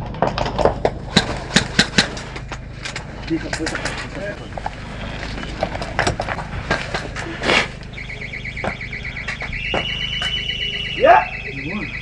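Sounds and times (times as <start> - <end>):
electronic alarm pulsing tone: 7.7 - 12.0.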